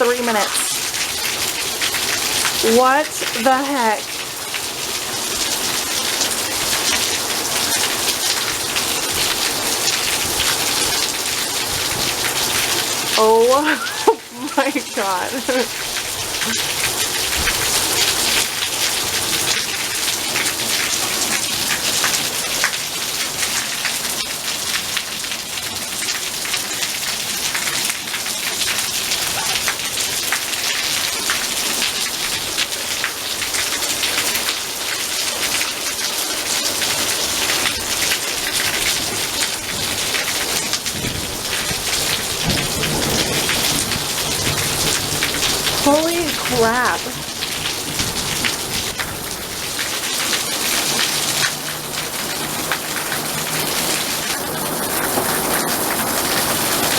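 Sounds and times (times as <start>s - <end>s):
heavy rain pouring: 0.0s - 56.9s
low rumble of thunder: 40.9s - 45.8s.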